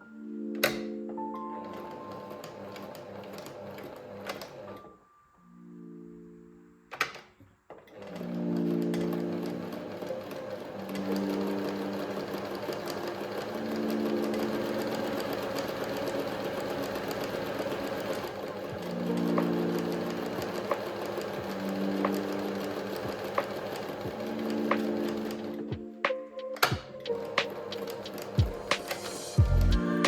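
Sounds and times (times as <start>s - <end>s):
soft background music: 0.0s - 30.0s
sewing machine running: 1.6s - 4.8s, 7.9s - 25.6s.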